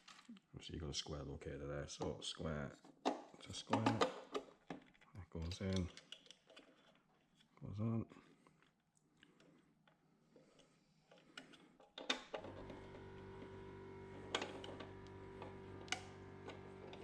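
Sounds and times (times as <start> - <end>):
wire spool clicks and knocks: 3.0 - 4.8, 11.9 - 17.0
steady machine hum: 12.4 - 17.0.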